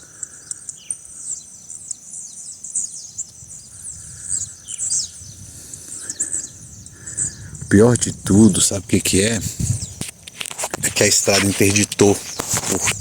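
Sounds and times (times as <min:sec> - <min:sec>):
birds chirping: 0:00.0 - 0:13.0
insect trill: 0:00.0 - 0:13.0.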